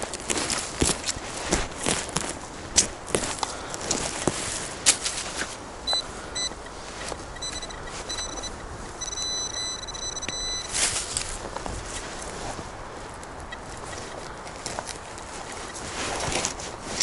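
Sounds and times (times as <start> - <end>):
leaves rustling: 0.0 - 17.0
metal detector beeps: 5.8 - 11.0.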